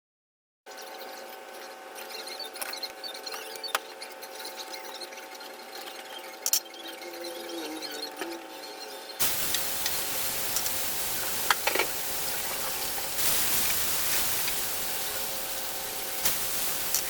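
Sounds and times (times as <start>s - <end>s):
food sizzling in hot oil: 9.2s - 17.0s.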